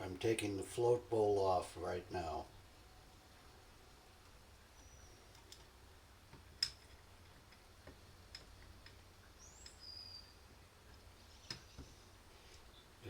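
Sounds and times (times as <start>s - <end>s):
small tools clicking on metal parts: 6.3s - 9.0s.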